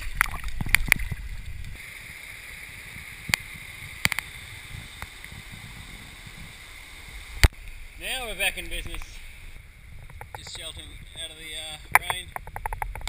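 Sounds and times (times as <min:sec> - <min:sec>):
hiss of moving water: 0:00.0 - 0:12.0
sharp clicks: 0:11.8 - 0:13.0.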